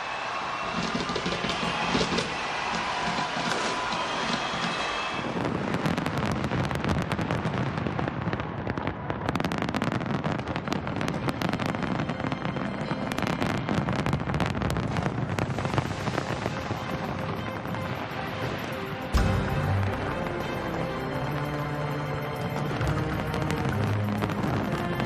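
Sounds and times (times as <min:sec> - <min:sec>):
fireworks bangs and crackles: 0:00.0 - 0:25.0.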